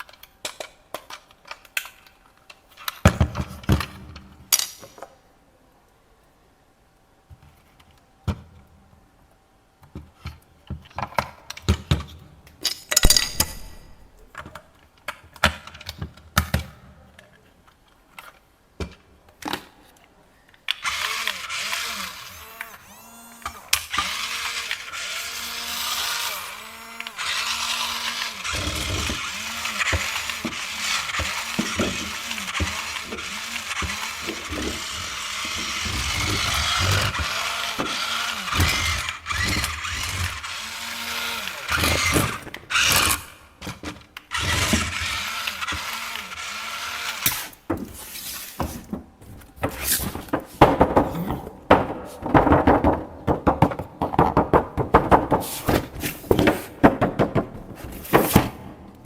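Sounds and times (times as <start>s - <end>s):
toy electric motor whirring: 20.7s - 43.5s, 44.3s - 48.6s
plastic gears clicking and knocking: 20.7s - 47.8s.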